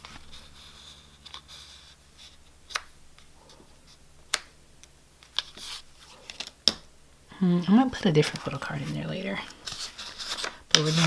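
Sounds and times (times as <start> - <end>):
paper and plastic rustling: 0.0 - 4.0, 5.2 - 6.6, 7.9 - 11.0.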